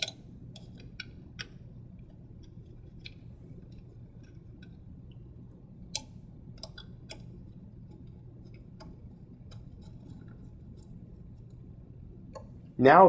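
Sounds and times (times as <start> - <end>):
small metal clicks: 0.0 - 4.8
low steady hum: 0.0 - 13.0.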